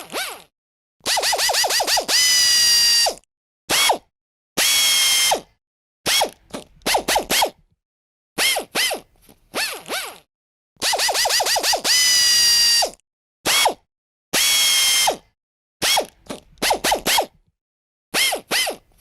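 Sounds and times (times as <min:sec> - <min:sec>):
rapid ratchet clicks: 0:01.1 - 0:02.4, 0:10.8 - 0:12.2.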